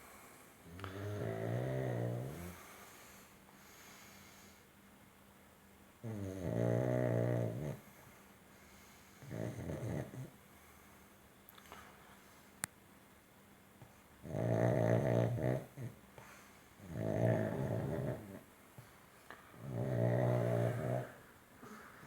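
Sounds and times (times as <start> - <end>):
dog snoring: 0.6 - 2.7, 6.0 - 7.9, 9.2 - 10.4, 14.2 - 16.0, 16.8 - 18.4, 19.5 - 22.0
soft breathing: 2.4 - 4.8, 16.1 - 16.8, 18.7 - 22.0.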